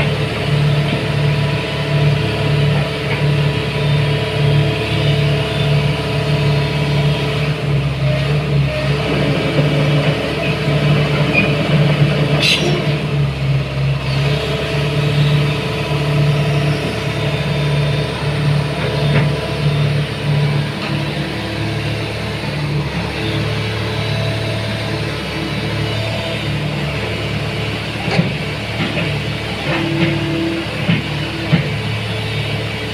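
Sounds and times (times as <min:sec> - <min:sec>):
excavator diesel engine running: 0:00.0 - 0:32.9
brief high squeak: 0:12.4 - 0:13.0.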